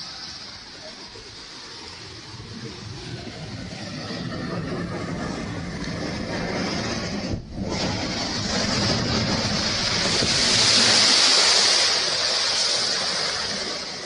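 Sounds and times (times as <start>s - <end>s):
strong wind blowing: 0.0s - 14.0s.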